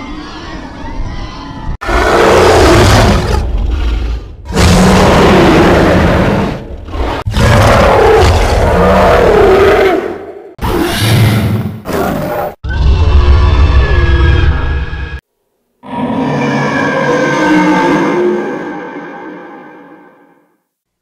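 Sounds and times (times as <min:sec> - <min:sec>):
monster roars: 0:01.8 - 0:11.6.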